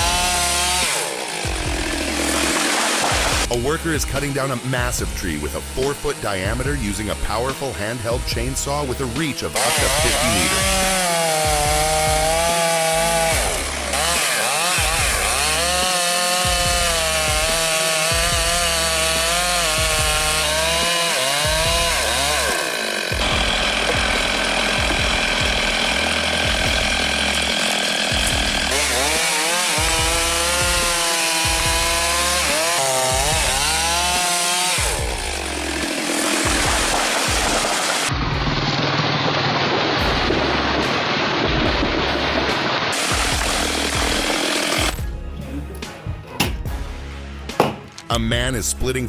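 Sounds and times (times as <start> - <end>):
music with pulsing bass: 0.0 - 0.9, 1.5 - 2.4, 8.2 - 14.2, 14.8 - 22.5, 23.2 - 29.2, 29.8 - 34.2, 41.5 - 42.6, 43.2 - 47.6
chainsaw cutting tree: 0.0 - 45.1.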